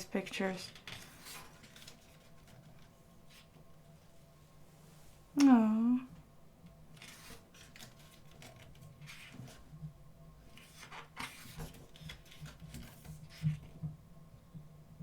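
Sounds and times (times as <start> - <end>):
pages rustling as turned: 0.8 - 3.6, 6.9 - 9.7, 10.5 - 13.8.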